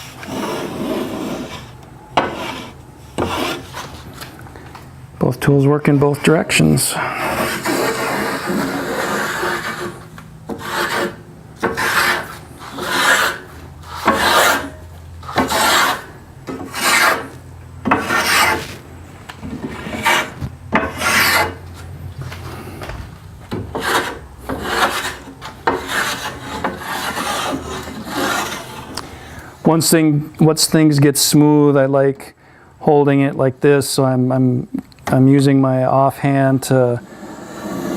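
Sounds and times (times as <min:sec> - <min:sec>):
hand plane shaving wood: 0:00.1 - 0:04.0, 0:07.0 - 0:18.8, 0:19.5 - 0:22.6, 0:23.5 - 0:29.0, 0:37.0 - 0:37.9.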